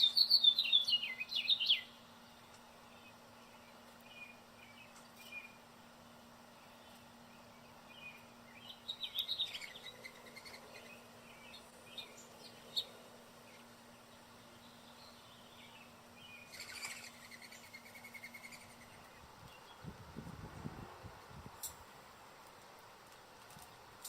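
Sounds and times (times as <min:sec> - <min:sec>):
birds chirping: 0:00.0 - 0:20.7.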